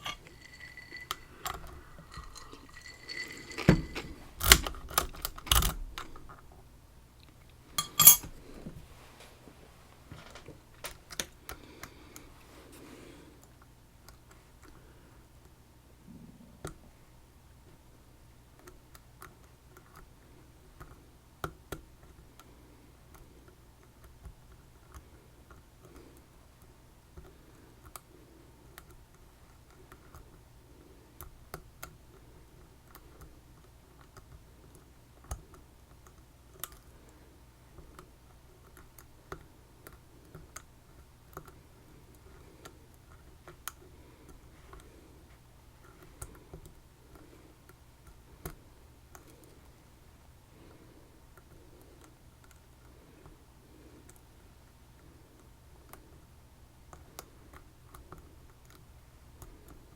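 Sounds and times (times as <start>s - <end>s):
lock picks clicking and scraping: 0.0s - 6.3s, 7.8s - 8.4s
low steady hum: 0.0s - 59.9s.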